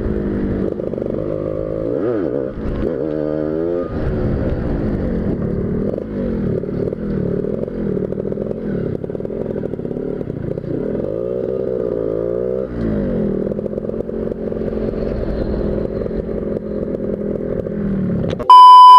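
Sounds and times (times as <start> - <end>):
motorcycle engine revving: 0.0 - 18.4.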